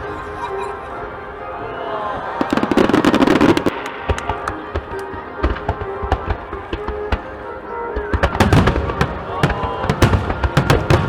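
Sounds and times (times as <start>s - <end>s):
music: 0.0s - 11.0s
fireworks crackling and popping: 1.7s - 11.0s
deep firework booms: 8.0s - 11.0s.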